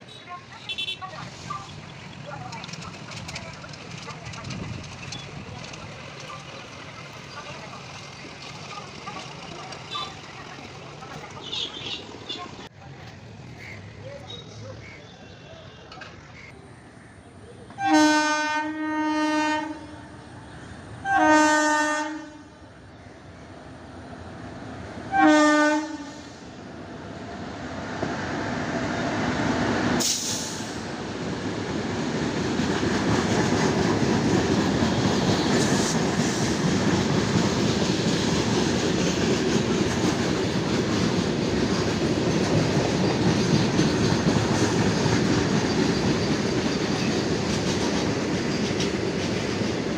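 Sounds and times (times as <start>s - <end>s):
freight train rumble and clatter: 0.0s - 14.4s, 23.9s - 49.9s
locomotive horn honking: 0.1s - 1.3s, 9.8s - 10.4s, 17.8s - 20.2s, 21.0s - 22.5s, 25.1s - 26.3s.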